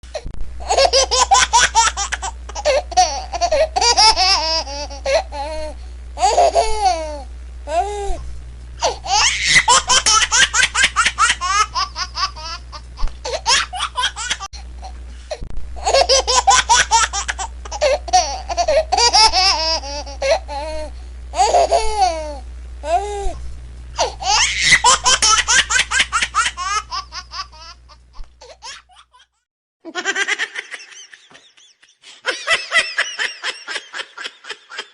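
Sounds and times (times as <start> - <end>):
steady low hum: 0.0 - 28.9
baby laughing: 0.6 - 7.2, 8.8 - 14.5, 15.8 - 22.4, 24.0 - 34.9.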